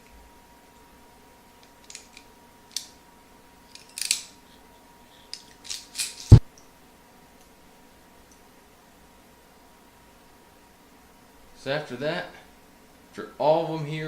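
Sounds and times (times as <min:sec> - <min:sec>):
wire snipping and rustling: 0:01.6 - 0:03.0, 0:03.7 - 0:04.4, 0:05.3 - 0:06.4.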